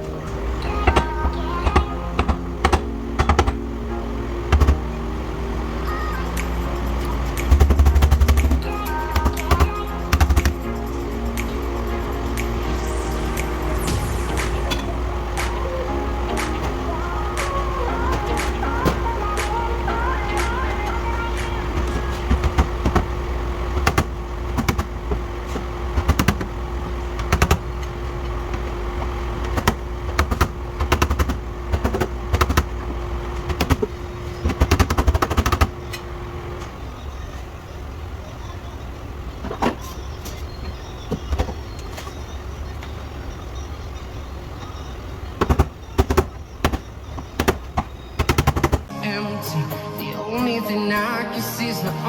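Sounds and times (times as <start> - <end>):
steady hum: 0.0 - 52.0
low rumble: 9.9 - 30.8.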